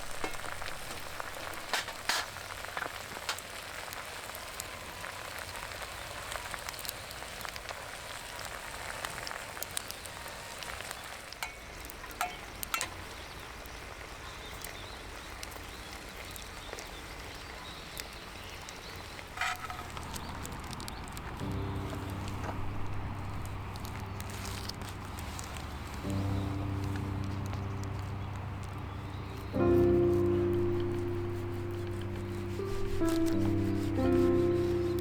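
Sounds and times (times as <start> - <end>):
food sizzling in a frying pan: 0.0 - 35.0
pops and crackles: 0.0 - 35.0.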